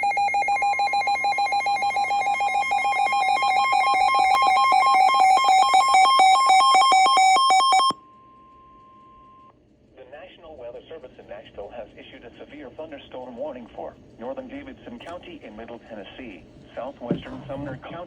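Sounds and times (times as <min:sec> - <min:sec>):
steady warning alarm tone: 0:00.0 - 0:09.5.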